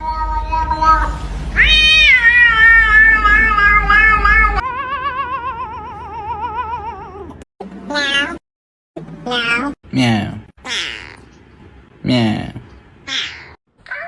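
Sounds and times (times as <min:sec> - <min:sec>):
cat meowing: 0:01.6 - 0:08.4, 0:10.6 - 0:11.3.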